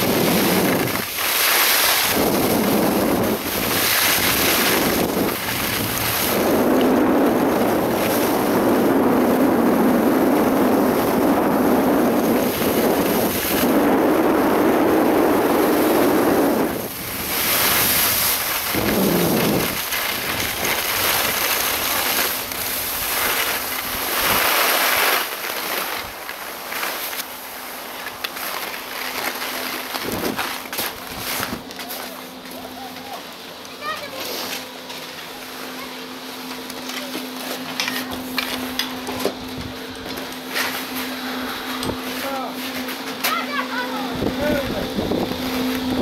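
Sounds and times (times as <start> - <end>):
wind buffeting microphone: 2.0 - 24.4, 44.1 - 46.0.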